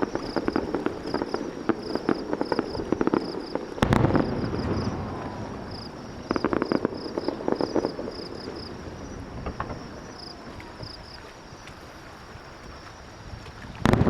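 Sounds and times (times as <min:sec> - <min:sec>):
firework bang: 0:00.0 - 0:10.1
firework crackling: 0:00.0 - 0:11.0
crickets chirping: 0:00.0 - 0:14.0.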